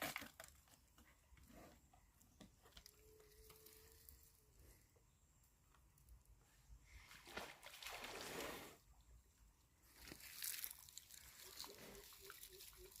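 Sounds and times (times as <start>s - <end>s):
faint water sloshing: 6.8s - 9.1s.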